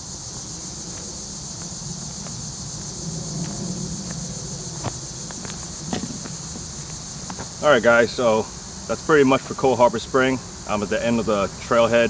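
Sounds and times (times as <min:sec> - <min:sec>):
insects buzzing: 0:00.0 - 0:12.0.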